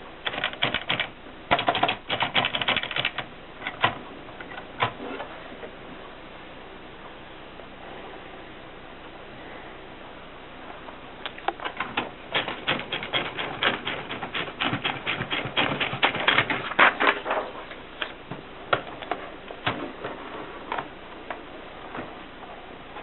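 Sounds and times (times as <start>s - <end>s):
typewriter key strikes: 0.3s - 4.0s, 12.3s - 16.6s.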